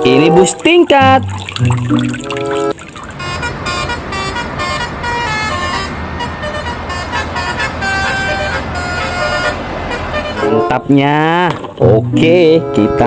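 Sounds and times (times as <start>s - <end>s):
low engine and traffic rumble: 2.7s - 13.0s
bus horn playing a tooting tune: 3.2s - 11.2s.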